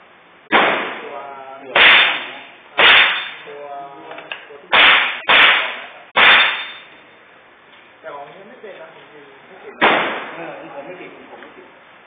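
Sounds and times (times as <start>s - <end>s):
rifle shots with echo: 1.8s - 3.3s, 4.7s - 6.6s.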